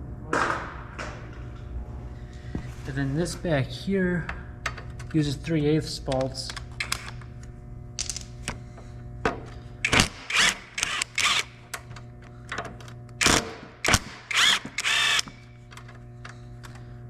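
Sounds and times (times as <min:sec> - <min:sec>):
faint steady hum: 0:00.0 - 0:17.0
sharp metal clicks: 0:09.8 - 0:11.8
ratchet socket tool clicking: 0:09.9 - 0:11.5, 0:13.2 - 0:15.3.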